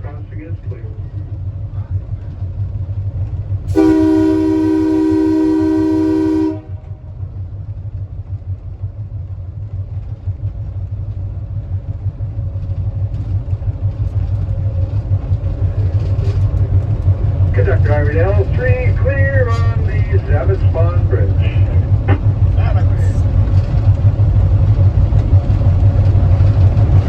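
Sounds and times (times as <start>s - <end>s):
train rumbling on rails: 0.0s - 27.0s
train horn blast: 3.7s - 7.1s.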